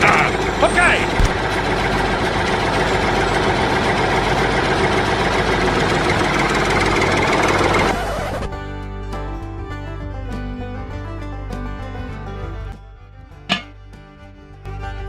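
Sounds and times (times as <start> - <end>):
small engine-driven machine running: 0.0 - 8.5.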